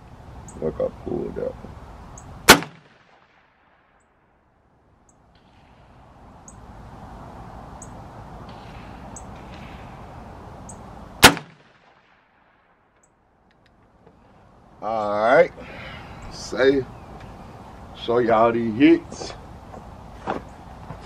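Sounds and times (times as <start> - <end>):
faint rushing noise: 0.0 - 21.0
rifle shot: 2.4 - 4.0, 11.2 - 12.8.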